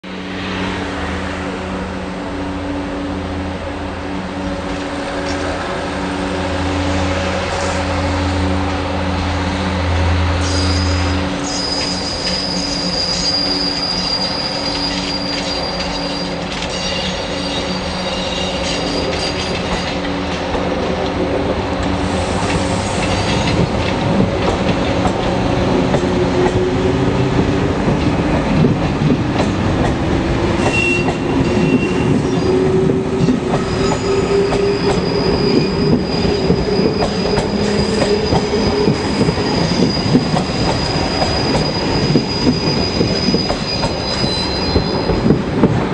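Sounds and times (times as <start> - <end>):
diesel railcar engine running: 0.1 - 45.9
wheels squealing: 10.4 - 20.2, 33.6 - 45.3.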